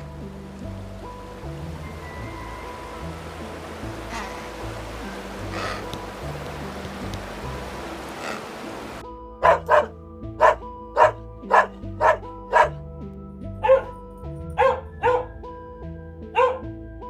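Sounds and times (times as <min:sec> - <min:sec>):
background music: 0:00.0 - 0:17.0
dog barking: 0:09.4 - 0:12.8, 0:13.6 - 0:14.0, 0:14.6 - 0:15.4, 0:16.3 - 0:16.7.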